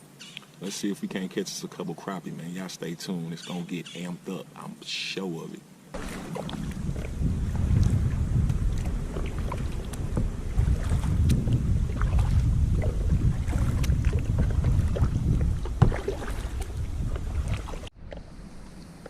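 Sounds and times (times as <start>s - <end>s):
wind rumbling on microphone: 5.9s - 19.0s.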